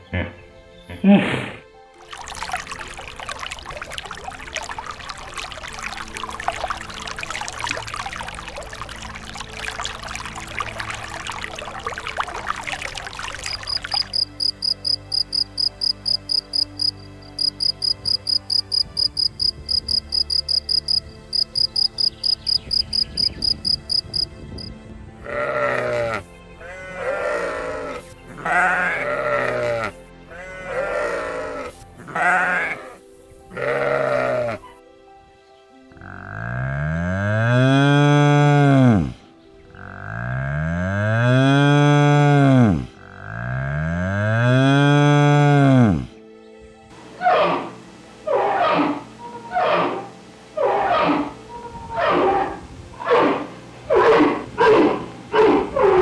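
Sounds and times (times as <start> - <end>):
background music: 0.0 - 56.0
high rapid chirping: 13.7 - 24.3
sheep bleating: 25.2 - 34.6.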